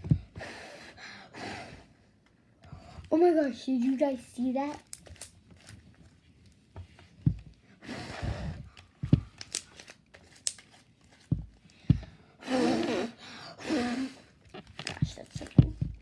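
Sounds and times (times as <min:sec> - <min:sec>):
soft thumps: 0:06.8 - 0:07.6, 0:09.0 - 0:09.3, 0:11.3 - 0:12.2, 0:15.0 - 0:16.0.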